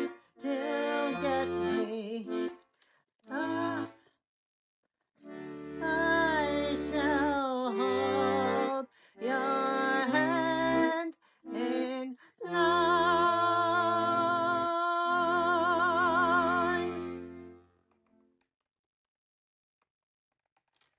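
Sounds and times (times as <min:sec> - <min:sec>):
woman singing: 0:00.4 - 0:02.4, 0:03.3 - 0:04.0, 0:05.8 - 0:17.0
instrumental chords with bass: 0:05.3 - 0:07.0.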